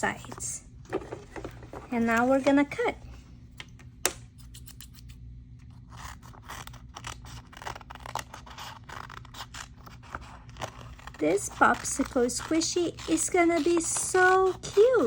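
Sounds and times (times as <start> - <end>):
scissors snipping paper: 5.9 - 15.0.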